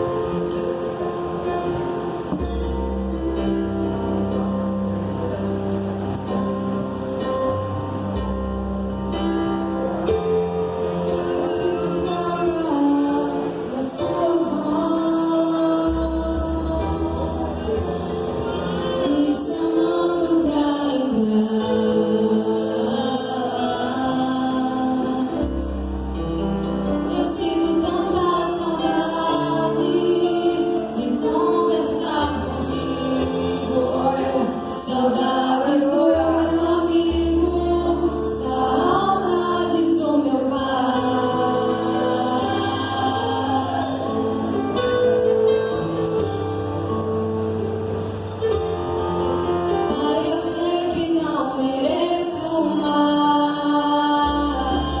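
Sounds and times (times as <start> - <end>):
band playing a song: 0.0 - 51.3
voices singing: 27.1 - 45.2.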